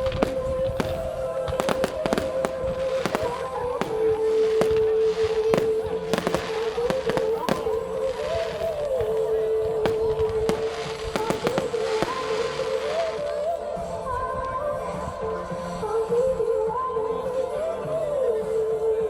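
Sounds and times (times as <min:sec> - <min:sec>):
fireworks bangs and crackles: 0:00.0 - 0:13.7.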